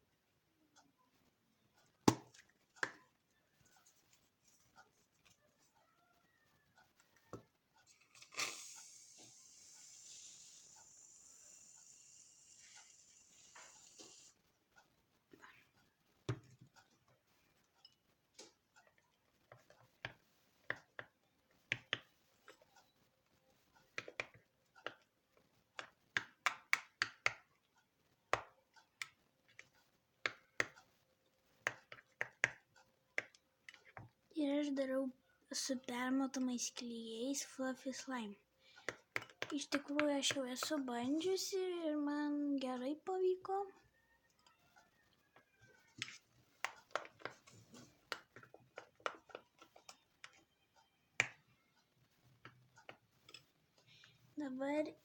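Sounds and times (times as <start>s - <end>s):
utensil tapping against a bowl: 38.8s - 40.7s.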